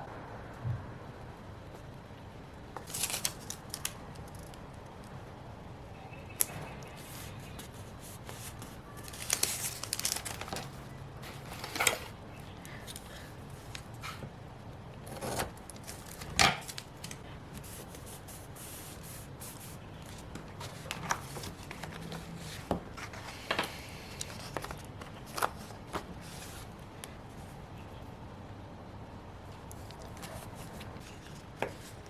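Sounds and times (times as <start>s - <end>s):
paper rustling: 2.8s - 4.5s, 7.0s - 12.1s, 15.1s - 26.8s, 29.8s - 32.0s.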